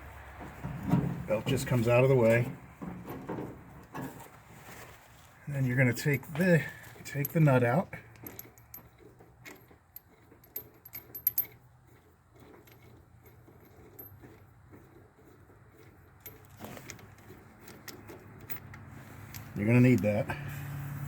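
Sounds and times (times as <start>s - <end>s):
metallic clinks and taps: 6.2s - 20.1s.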